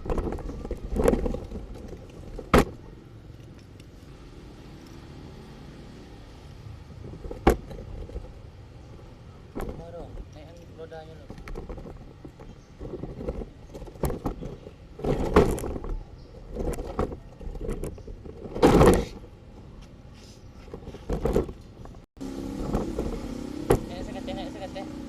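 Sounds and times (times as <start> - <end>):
plastic toy vehicles rattling: 0.0 - 3.9, 9.4 - 19.3.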